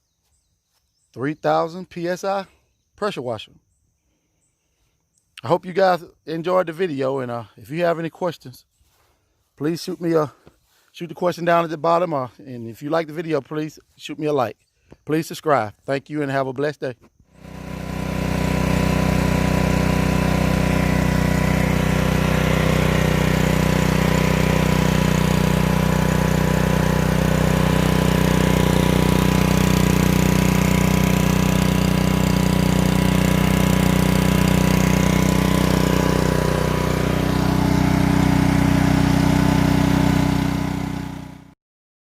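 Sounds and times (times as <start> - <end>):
pressure washer engine running: 17.3 - 41.6.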